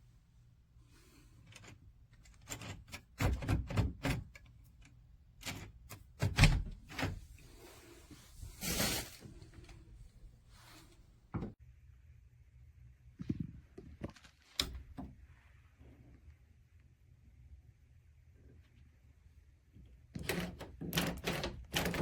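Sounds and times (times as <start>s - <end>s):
door latch clicking and knocking: 2.4s - 4.5s, 5.4s - 7.2s, 20.2s - 22.0s.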